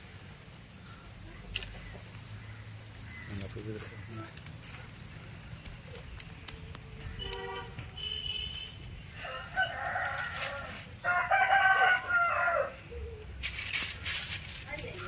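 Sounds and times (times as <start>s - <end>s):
rooster crowing: 9.2s - 12.8s.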